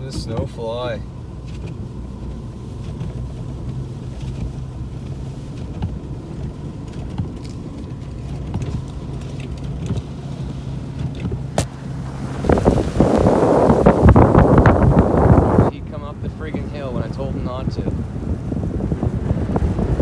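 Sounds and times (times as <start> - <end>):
pickup engine under load: 0.0 - 20.0
plow pushing snow: 0.0 - 20.0
light clicks and rattles: 1.4 - 11.5.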